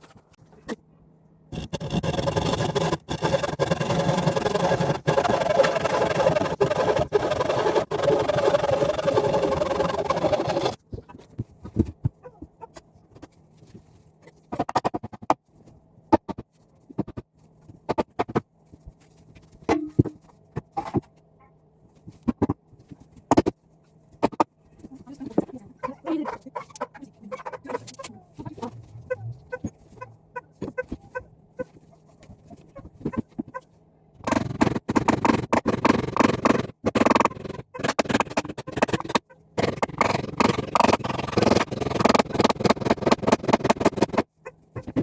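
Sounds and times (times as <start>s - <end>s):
faint steady hum: 0.0s - 34.7s
hen clucking: 25.7s - 31.8s.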